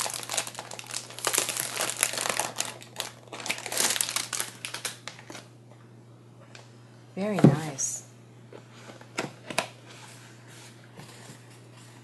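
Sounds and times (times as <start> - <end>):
paper packaging rustling: 0.0 - 5.5.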